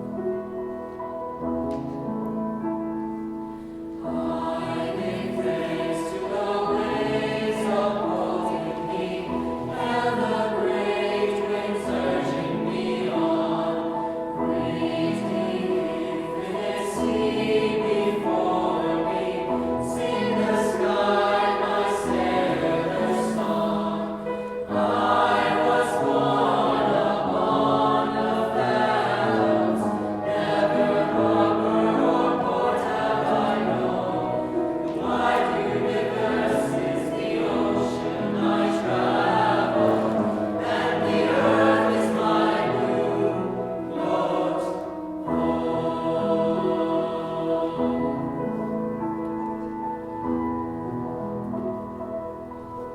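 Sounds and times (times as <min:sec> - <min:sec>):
choir singing a hymn: 0:00.0 - 0:52.9.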